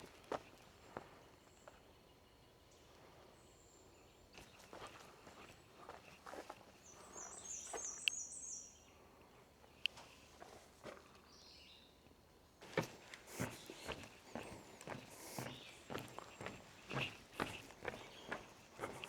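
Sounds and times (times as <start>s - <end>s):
birds singing: 0.0s - 10.4s, 11.0s - 19.0s
footsteps on a trail: 4.4s - 8.0s, 12.6s - 19.0s.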